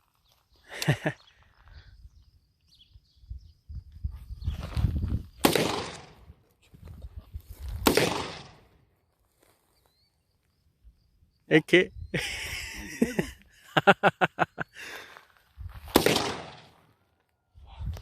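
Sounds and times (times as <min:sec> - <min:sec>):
gunshots with echo: 0:05.4 - 0:06.2, 0:07.8 - 0:08.7, 0:15.9 - 0:16.8.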